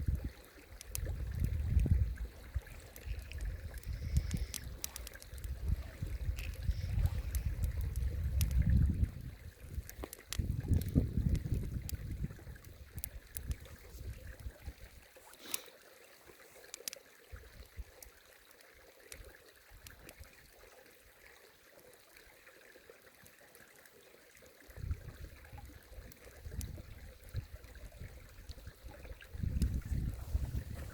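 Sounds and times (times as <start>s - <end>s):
campfire crackling and popping: 0.1s - 15.7s, 16.6s - 17.0s
wind buffeting microphone: 0.9s - 14.9s, 24.8s - 30.9s.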